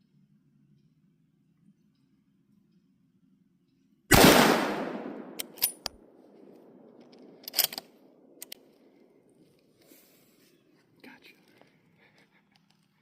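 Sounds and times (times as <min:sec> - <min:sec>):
gunshot with echo: 0:04.1 - 0:05.5.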